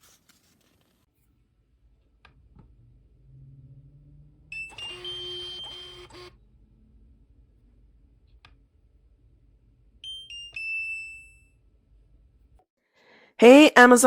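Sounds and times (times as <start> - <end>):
click: 8.3 - 8.6.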